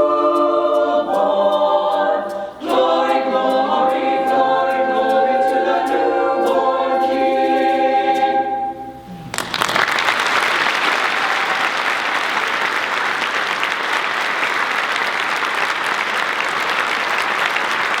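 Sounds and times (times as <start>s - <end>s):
choir singing a cappella: 0.0s - 9.0s
audience applause: 9.3s - 18.0s.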